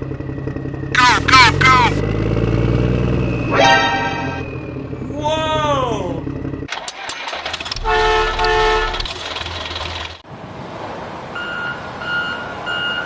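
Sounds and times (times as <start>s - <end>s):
vehicle horn tooting: 7.7s - 9.1s.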